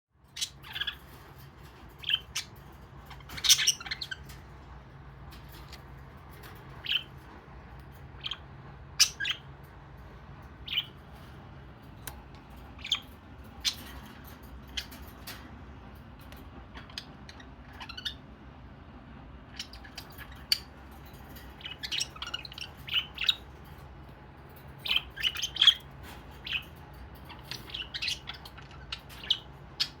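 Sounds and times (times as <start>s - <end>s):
budgerigars chirping: 0.3s - 1.2s, 1.9s - 4.6s, 6.6s - 7.3s, 8.0s - 9.5s, 10.6s - 11.0s, 12.7s - 15.4s, 16.8s - 18.2s, 19.5s - 23.9s, 24.8s - 30.0s.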